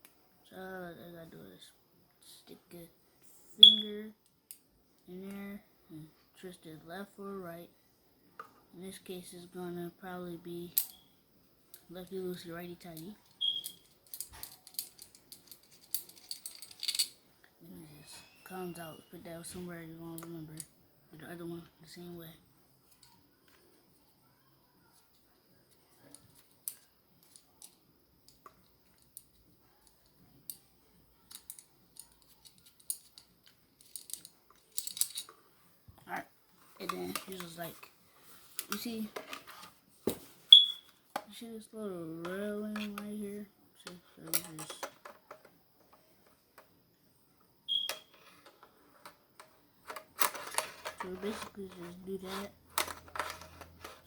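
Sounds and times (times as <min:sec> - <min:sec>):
small clicks and knocks: 0:12.9 - 0:17.1, 0:31.2 - 0:35.4, 0:43.8 - 0:46.8, 0:47.8 - 0:51.9, 0:52.7 - 0:54.0.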